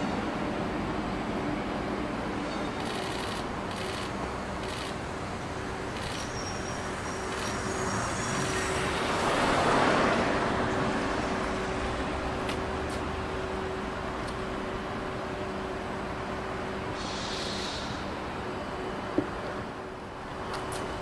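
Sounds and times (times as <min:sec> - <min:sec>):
vehicle passing by: 0:07.4 - 0:12.2.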